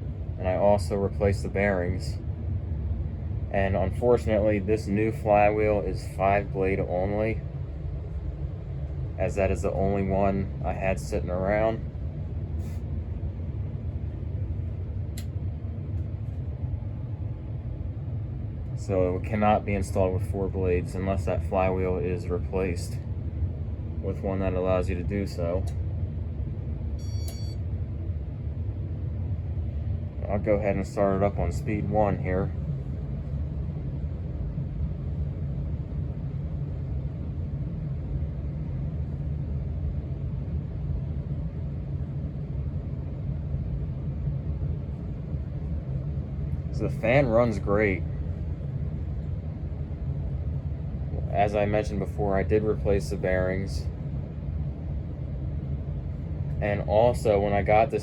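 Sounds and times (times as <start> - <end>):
ceiling fan running: 0.0 - 58.0
low background rumble: 0.0 - 58.0
brief click: 27.2 - 27.6.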